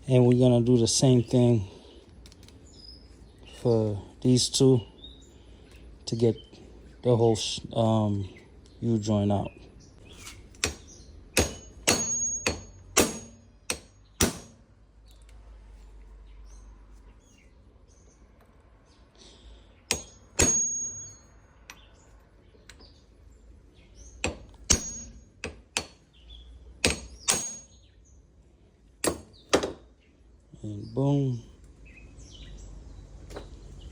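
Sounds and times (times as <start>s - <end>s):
hammer striking metal: 10.6s - 14.6s, 19.9s - 21.8s, 24.2s - 26.0s, 26.8s - 27.8s, 29.0s - 29.8s.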